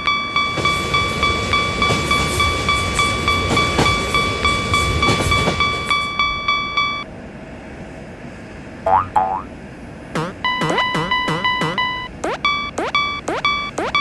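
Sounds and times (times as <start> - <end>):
railroad crossing bell ringing: 0.3 - 7.0.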